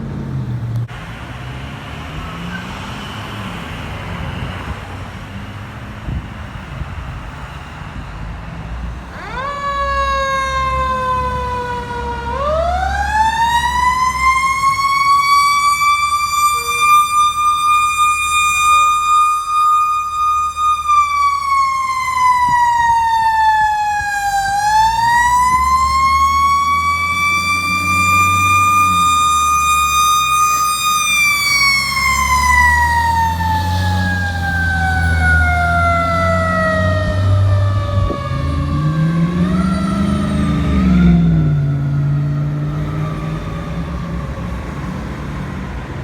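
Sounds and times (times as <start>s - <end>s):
truck engine rumbling: 0.0s - 46.0s
mechanical siren wailing: 9.1s - 45.2s.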